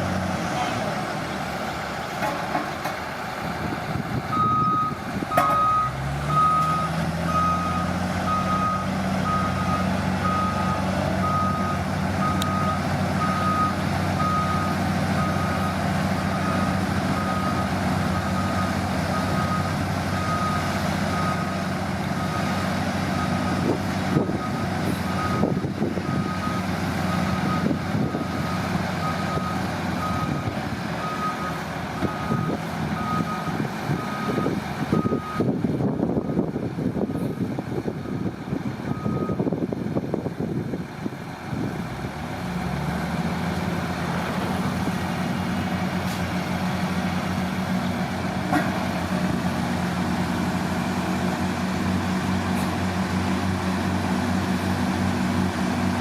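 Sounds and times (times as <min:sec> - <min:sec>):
diesel engine revving: 0:00.0 - 0:56.0
reversing alarm beeping: 0:04.3 - 0:21.6, 0:23.2 - 0:35.5, 0:38.9 - 0:39.4.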